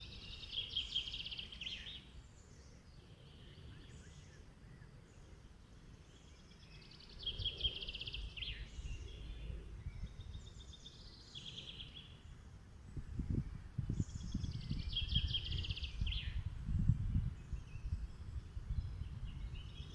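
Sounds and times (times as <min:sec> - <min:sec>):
songbird singing: 0:00.0 - 0:19.9.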